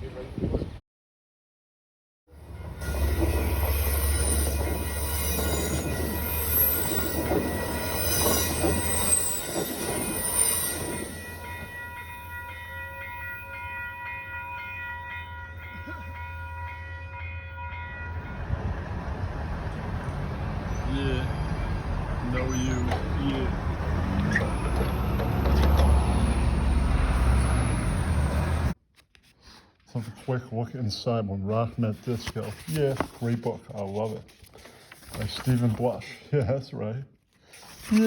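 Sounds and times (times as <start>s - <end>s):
steady high whining tones: 2.4s - 14.4s
high wavering squeals: 2.4s - 18.2s, 20.6s - 28.8s
vehicle low rumble: 18.2s - 28.8s.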